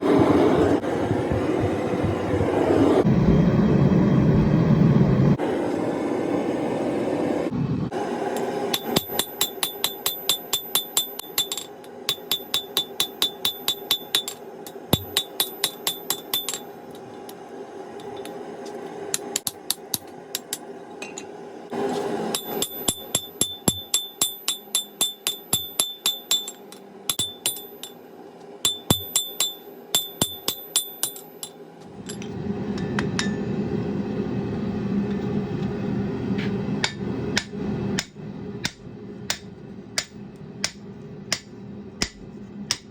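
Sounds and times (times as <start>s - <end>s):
low rumbling noise: 0.0s - 8.1s, 31.8s - 42.7s
hammer ringing on anvil: 8.7s - 16.8s, 22.3s - 28.0s, 28.6s - 32.2s, 32.8s - 33.5s.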